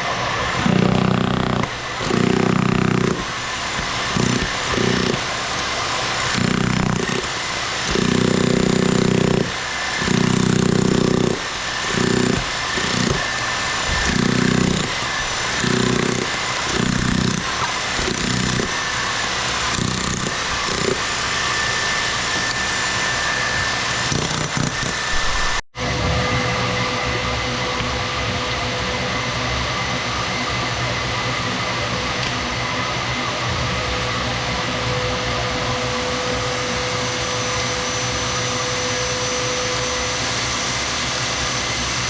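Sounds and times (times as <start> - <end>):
demolition hammer breaking concrete: 0.6 - 19.1, 19.7 - 21.1.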